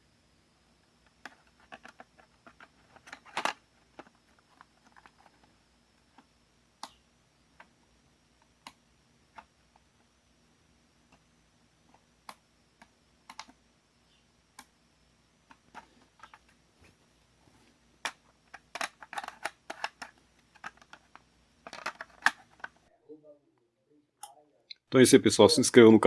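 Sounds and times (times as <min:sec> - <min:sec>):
small sharp clicks and taps: 0:06.2 - 0:07.0, 0:12.2 - 0:13.6.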